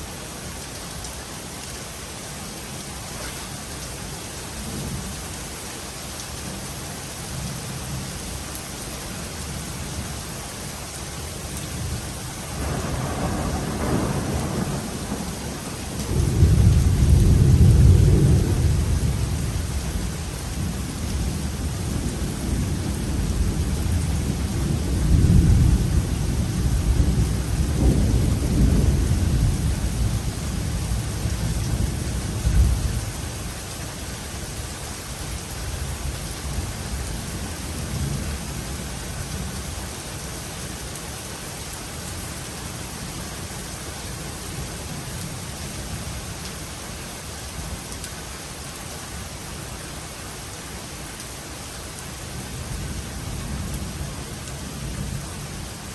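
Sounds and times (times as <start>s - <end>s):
steady rain: 0.0s - 55.9s
rolling thunder: 12.6s - 20.7s, 21.4s - 33.0s.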